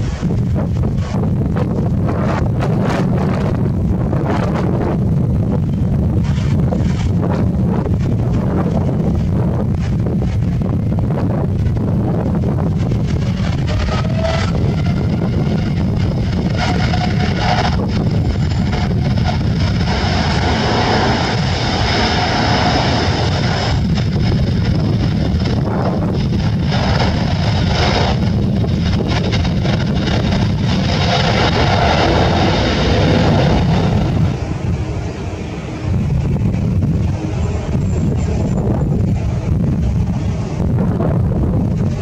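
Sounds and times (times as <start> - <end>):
jet engines running: 0.0 - 42.0
wind buffeting microphone: 0.0 - 42.0.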